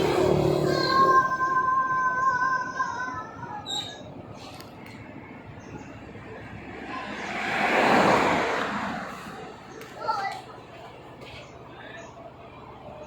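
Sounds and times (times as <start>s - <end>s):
vehicle passing by: 0.0s - 1.6s, 6.0s - 10.0s.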